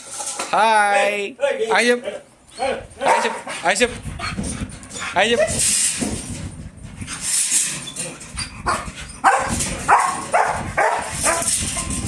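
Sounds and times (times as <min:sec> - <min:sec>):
dog barking: 0:03.0 - 0:03.5, 0:08.7 - 0:11.5.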